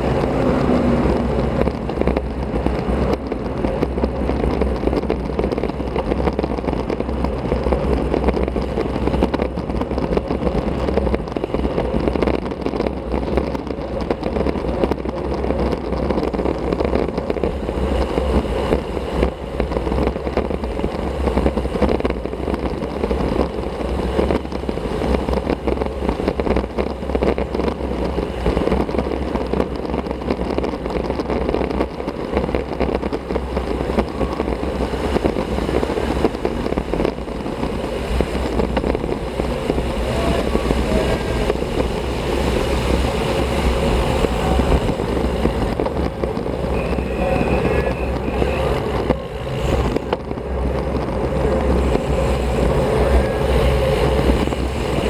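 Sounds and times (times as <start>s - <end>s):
wind rushing: 0.0s - 6.2s, 20.2s - 55.0s
bicycle tyre noise: 0.0s - 55.0s.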